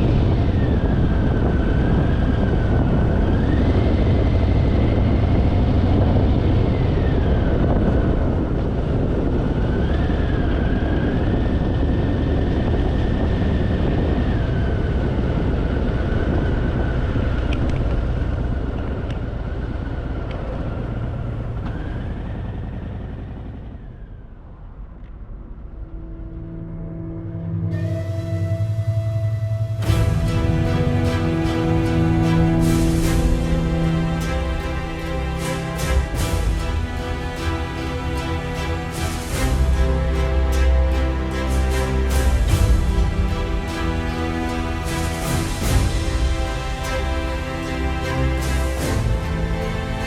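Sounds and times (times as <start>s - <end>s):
wind noise: 0.0s - 22.7s, 23.7s - 50.0s
motorcycle engine rumbling: 0.0s - 26.9s.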